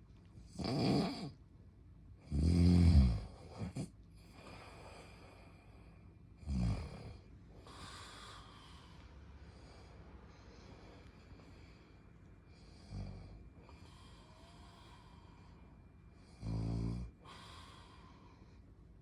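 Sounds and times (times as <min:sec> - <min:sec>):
person snoring: 0:00.5 - 0:01.4, 0:02.3 - 0:03.9.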